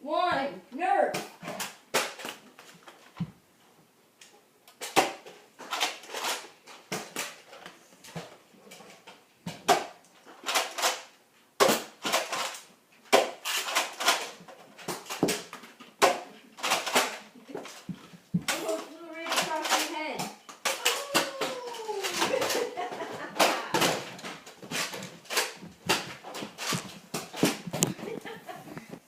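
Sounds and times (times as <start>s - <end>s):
people moving about: 14.6s - 29.0s.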